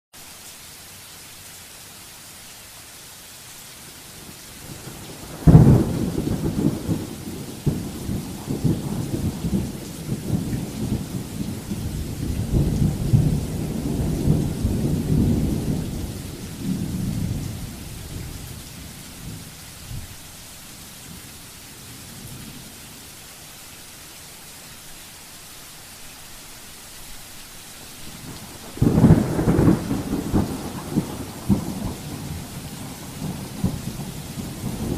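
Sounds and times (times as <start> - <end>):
rain hissing: 0.2 - 34.9
thunder rumbling: 4.6 - 20.1, 28.1 - 34.9.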